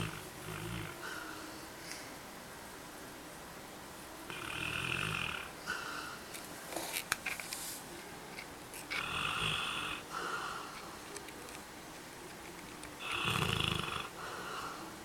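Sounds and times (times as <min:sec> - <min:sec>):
dog snoring: 0:00.0 - 0:01.0, 0:04.3 - 0:05.6, 0:08.9 - 0:10.1, 0:13.0 - 0:14.2.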